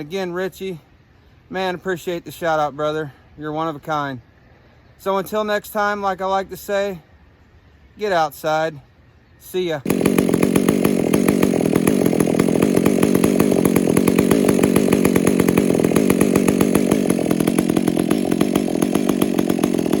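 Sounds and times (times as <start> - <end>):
chainsaw running: 9.8 - 20.0.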